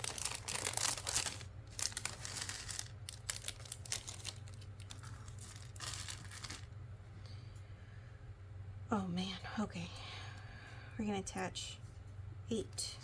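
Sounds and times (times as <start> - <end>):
plastic bag crinkling: 0.0 - 6.8.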